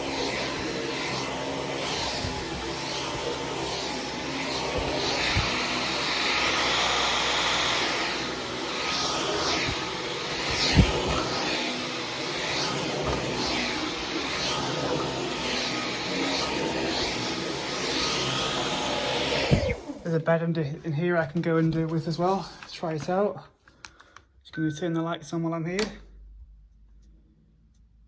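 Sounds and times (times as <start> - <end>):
vacuum cleaner on carpet: 0.0 - 20.3.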